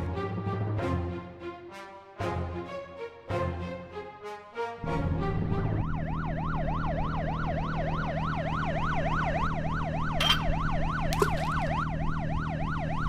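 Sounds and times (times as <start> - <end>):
police siren yelping: 5.3 - 13.0.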